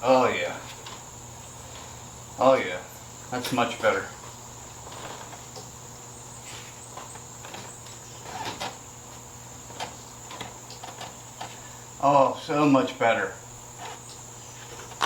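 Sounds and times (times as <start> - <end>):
crickets trilling: 0.0 - 15.0
faint clicks and rustles: 3.3 - 12.0, 13.6 - 15.0.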